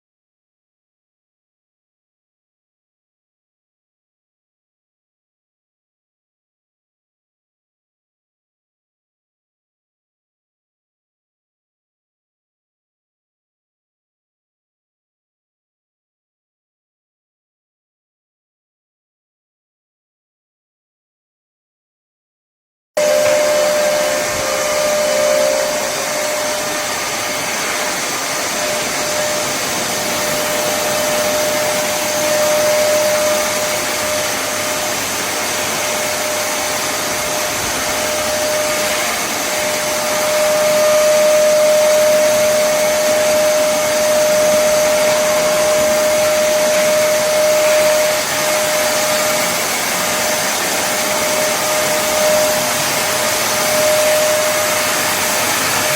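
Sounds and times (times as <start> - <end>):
vacuum cleaner running: 23.0 - 55.9.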